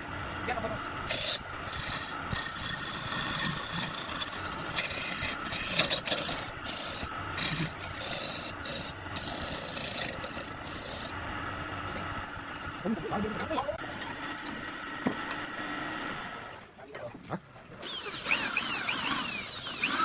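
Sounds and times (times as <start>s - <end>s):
lathe running hum: 0.0s - 16.6s, 17.8s - 20.0s
tool rasping on turning wood: 1.0s - 11.2s, 17.8s - 20.0s.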